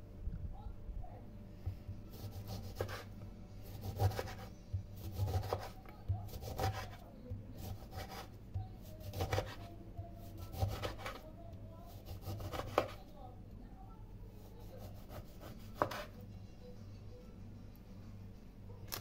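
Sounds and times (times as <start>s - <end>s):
hand scraping and rubbing food: 2.1s - 13.1s.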